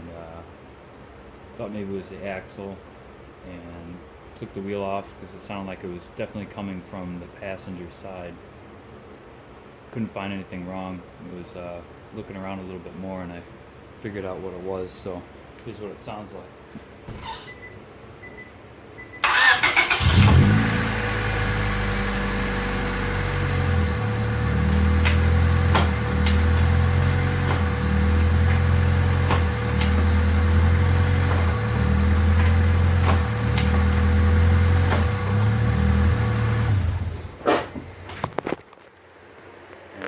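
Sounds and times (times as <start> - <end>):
car engine revving: 19.4 - 37.4.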